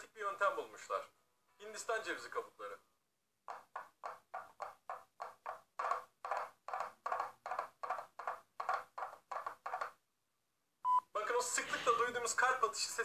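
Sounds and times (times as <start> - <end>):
coconut shells clip-clopping: 3.5 - 10.0.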